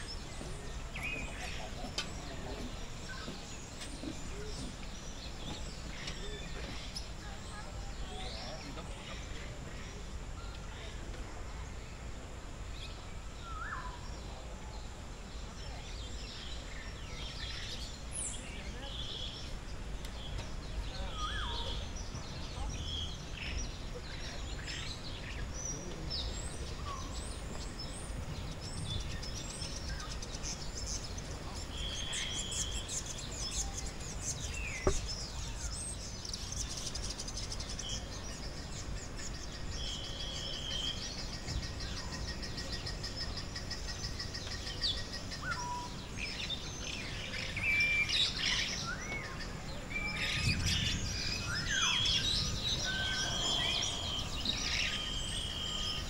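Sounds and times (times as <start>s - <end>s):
birds whistling and chirping: 0.0s - 10.7s, 12.9s - 14.5s, 15.5s - 56.0s
low background noise: 0.0s - 56.0s.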